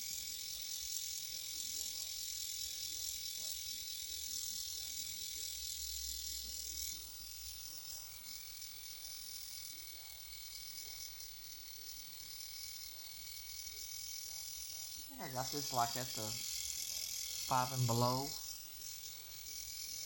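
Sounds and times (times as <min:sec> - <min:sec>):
eyebrow trimmer buzzing: 0:06.6 - 0:20.0.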